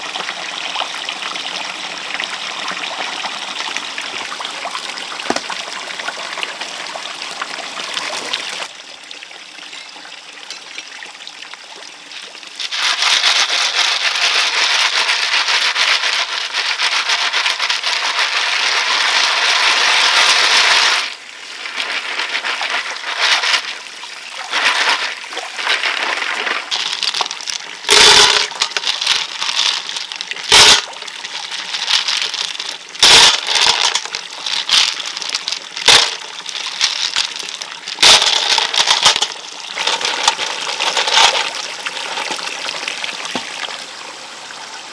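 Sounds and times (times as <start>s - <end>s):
water pouring hard: 1.5s - 8.7s, 12.2s - 44.0s
sharp knocks and cracks: 5.3s - 5.6s.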